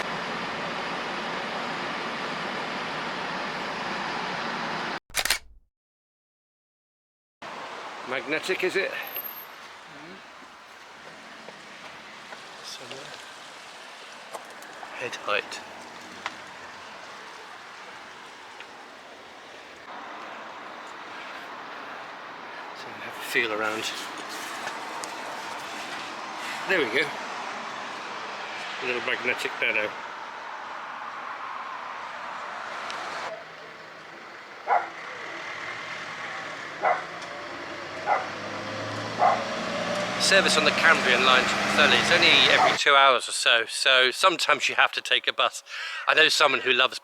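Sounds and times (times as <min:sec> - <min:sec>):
outdoor background noise: 0:00.0 - 0:05.4, 0:07.4 - 0:47.0
sharp click: 0:05.1 - 0:05.6
dog barking: 0:34.6 - 0:35.0, 0:36.8 - 0:37.1, 0:38.0 - 0:38.3, 0:39.2 - 0:39.4.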